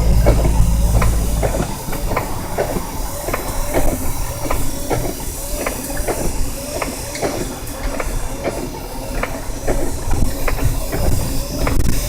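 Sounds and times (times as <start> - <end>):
regular clacking: 0.0 - 4.6
car cabin rumble: 0.0 - 4.7.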